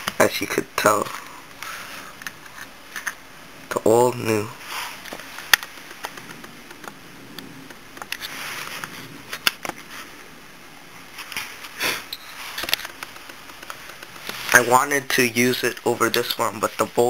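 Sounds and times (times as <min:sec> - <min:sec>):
faint rustling: 0:04.4 - 0:10.4, 0:11.0 - 0:17.0.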